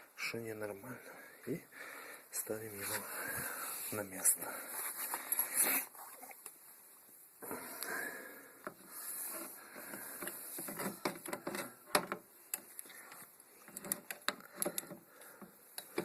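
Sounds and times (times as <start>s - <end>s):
small clicks and taps: 9.9s - 16.0s.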